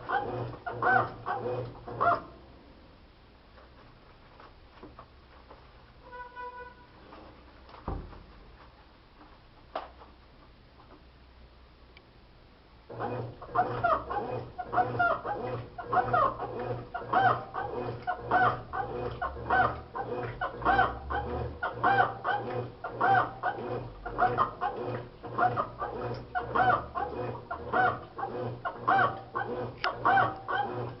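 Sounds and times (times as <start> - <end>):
washing machine motor hum: 0.0 - 2.4, 12.9 - 31.0
washing machine squeaking: 6.0 - 6.9, 12.9 - 31.0.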